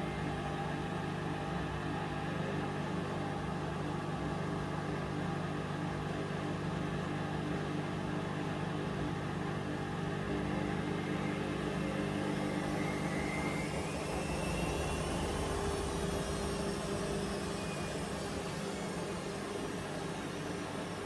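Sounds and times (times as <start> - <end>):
washing machine motor hum: 7.9 - 21.0
motor whine gliding in pitch: 10.6 - 19.8.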